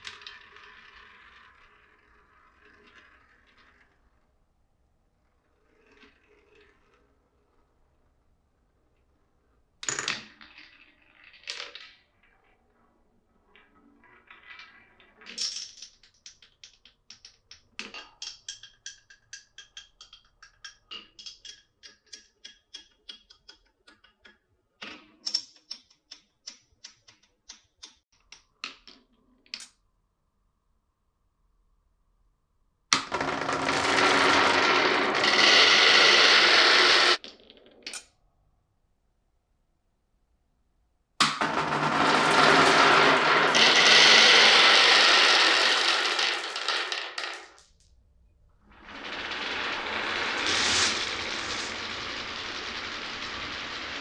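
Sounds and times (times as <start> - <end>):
glass marbles rolling on wooden run: 9.8 - 12.5, 13.5 - 24.4, 33.0 - 38.0, 41.2 - 47.7, 48.7 - 54.0.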